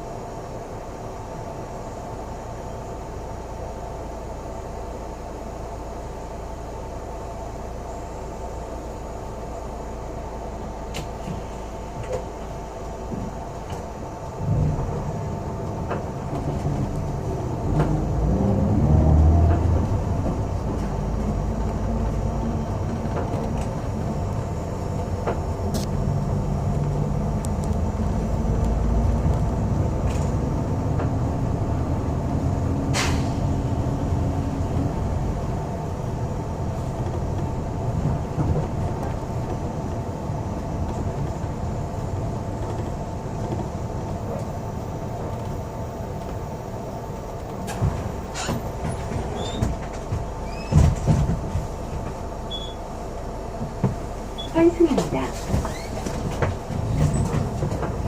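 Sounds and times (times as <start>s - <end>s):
bus engine and road rumble: 0.0s - 58.0s
clicks and rattles in cabin: 10.9s - 12.4s, 22.8s - 25.9s, 40.6s - 44.6s, 47.3s - 52.7s, 53.6s - 58.0s.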